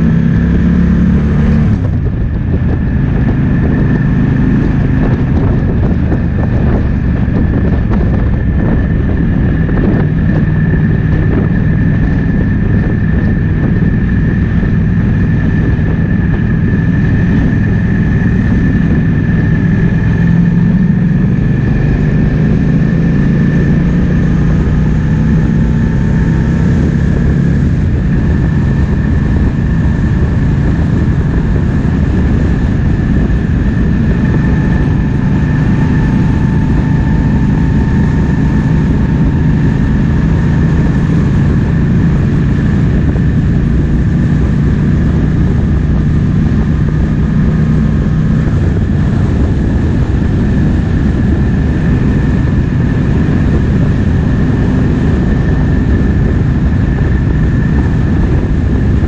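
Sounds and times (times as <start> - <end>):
motorcycle engine running: 0.0 - 59.0
wind noise: 0.0 - 59.0.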